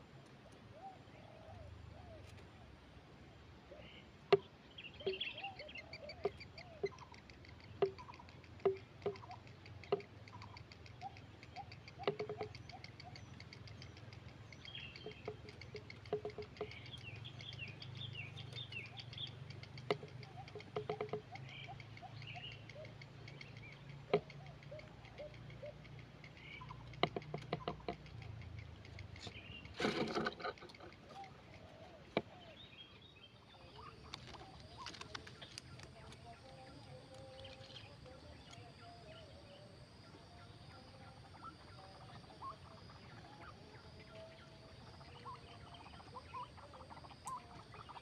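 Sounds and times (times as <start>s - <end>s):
heron chicks chirping: 4.3s - 48.0s
rapid ticking: 6.3s - 31.7s.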